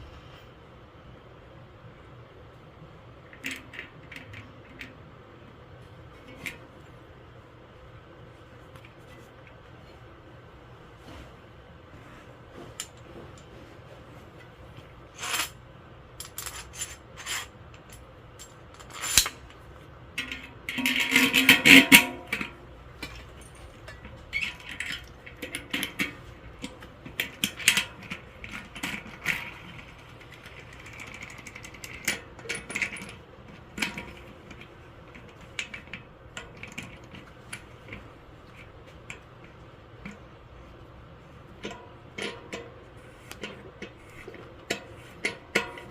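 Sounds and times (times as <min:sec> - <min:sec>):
small metal parts clicking and clinking: 0:15.2 - 0:15.6, 0:16.2 - 0:19.6.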